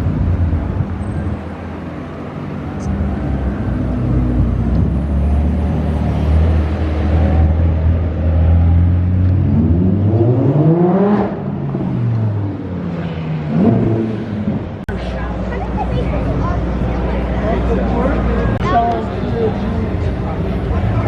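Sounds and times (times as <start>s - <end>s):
car engine revving: 1.5s - 14.8s.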